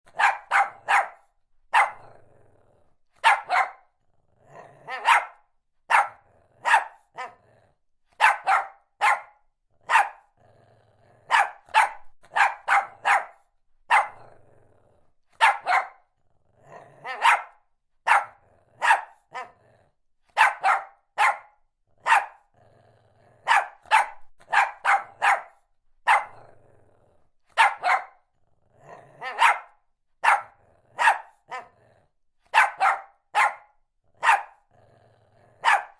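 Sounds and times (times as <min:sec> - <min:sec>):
small dog yapping: 0:00.1 - 0:02.0, 0:03.2 - 0:03.8, 0:04.9 - 0:05.3, 0:08.2 - 0:09.3, 0:15.4 - 0:16.0, 0:17.0 - 0:17.5, 0:20.4 - 0:22.4, 0:23.5 - 0:25.5, 0:27.6 - 0:28.1, 0:29.2 - 0:31.6, 0:32.6 - 0:34.5, 0:35.6 - 0:35.9.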